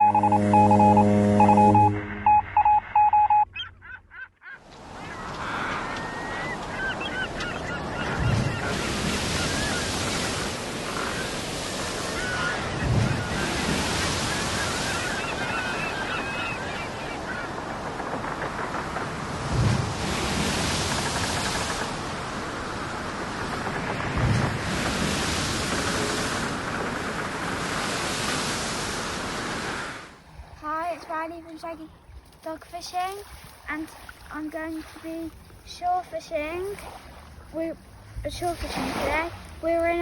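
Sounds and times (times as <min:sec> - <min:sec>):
surf: 0:00.0 - 0:03.4, 0:04.5 - 0:40.0
short electronic tone: 0:00.0 - 0:03.5
electronic beeps: 0:00.0 - 0:03.7
birds honking: 0:00.0 - 0:19.2
wind: 0:00.0 - 0:40.0.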